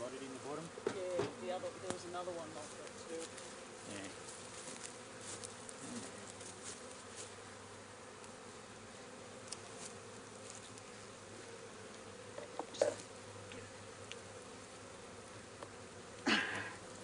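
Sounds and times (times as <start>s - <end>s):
bees buzzing: 0.0s - 17.0s.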